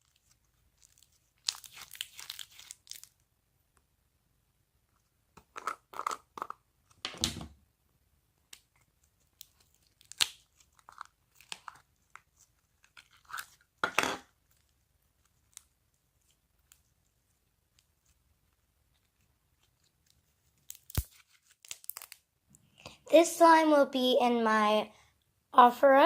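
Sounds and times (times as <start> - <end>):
slime crackling and squelching: 0.0 - 3.2, 8.5 - 13.8, 14.4 - 22.3.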